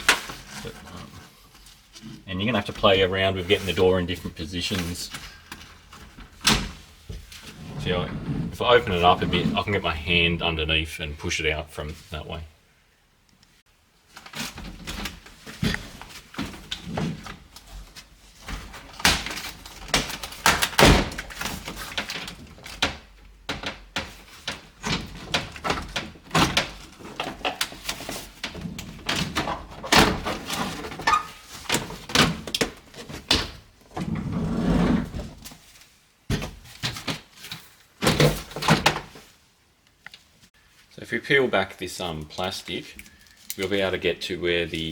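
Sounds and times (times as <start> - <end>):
heavy rumble: 7.6 - 10.2.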